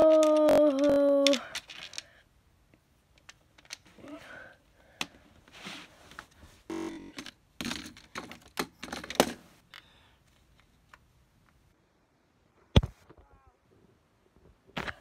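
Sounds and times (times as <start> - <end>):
plastic bricks clicking and rattling: 0.0 - 2.2, 3.1 - 3.9.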